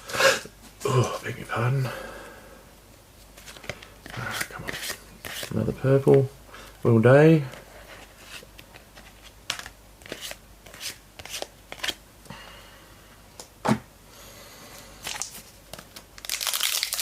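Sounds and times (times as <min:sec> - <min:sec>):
trading cards sliding and flipping: 0:03.4 - 0:06.3, 0:07.5 - 0:12.0
wrapper crinkling: 0:15.0 - 0:17.0.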